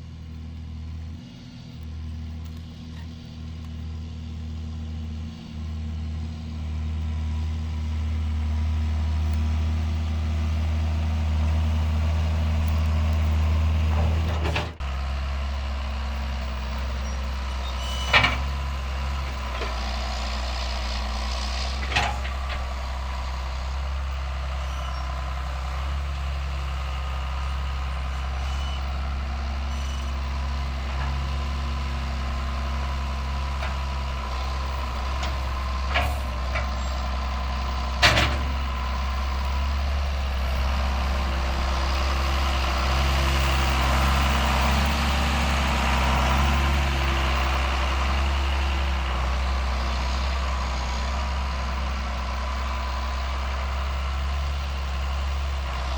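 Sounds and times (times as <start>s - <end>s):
tractor diesel engine running: 0.0s - 55.9s.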